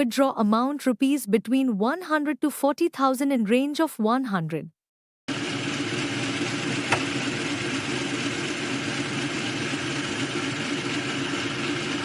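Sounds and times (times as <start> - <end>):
small motor running: 5.3 - 12.0.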